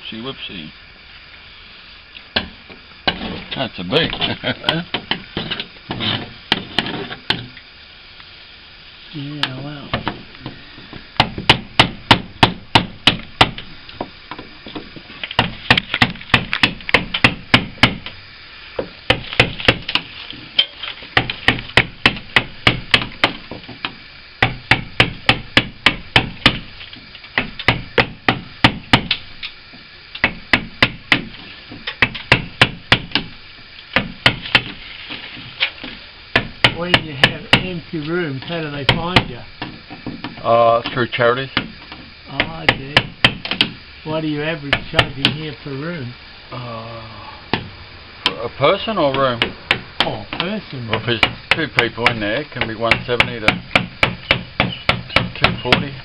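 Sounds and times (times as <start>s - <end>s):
hammer tapping: 49.4s - 56.0s.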